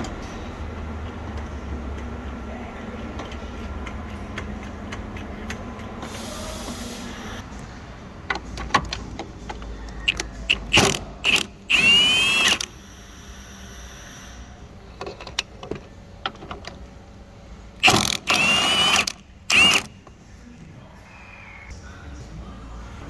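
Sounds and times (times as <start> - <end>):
metallic clicks and ratcheting: 10.1 - 12.7.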